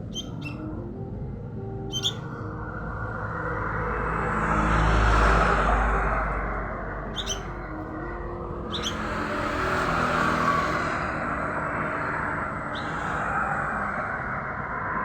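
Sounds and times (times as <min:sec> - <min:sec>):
steady background noise: 0:00.0 - 0:15.0
bird chick chirping: 0:00.1 - 0:00.6, 0:01.9 - 0:02.3, 0:07.2 - 0:07.5, 0:08.7 - 0:09.2.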